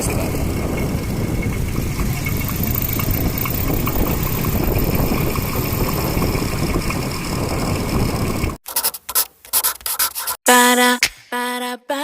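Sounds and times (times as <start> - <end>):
engine and road rumble: 0.0 - 8.6.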